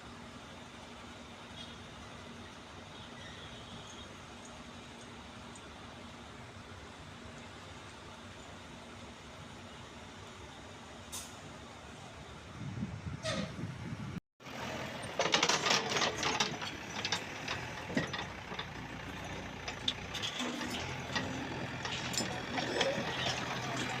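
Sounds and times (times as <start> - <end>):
engine running: 14.4 - 24.0.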